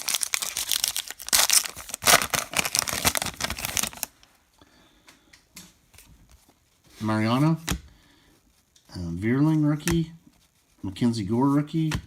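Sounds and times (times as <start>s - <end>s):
wrapper crinkling and tearing: 0.0s - 4.3s.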